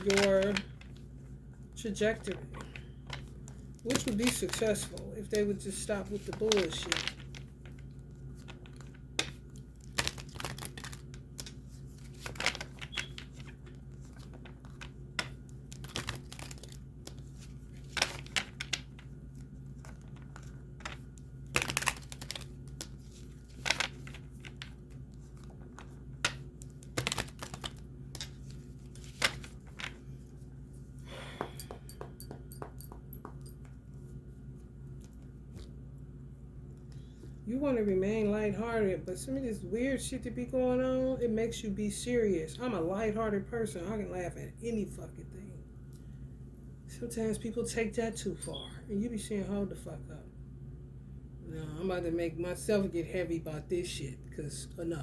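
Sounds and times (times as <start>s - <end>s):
faint steady hum: 0.0s - 55.0s
cards being shuffled: 6.0s - 30.1s.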